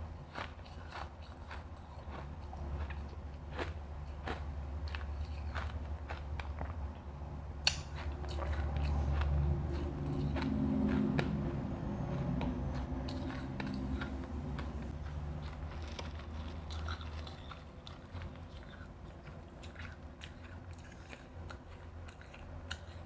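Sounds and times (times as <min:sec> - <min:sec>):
steady low hum: 0:00.0 - 0:23.0
ice crunching between teeth: 0:13.1 - 0:23.0.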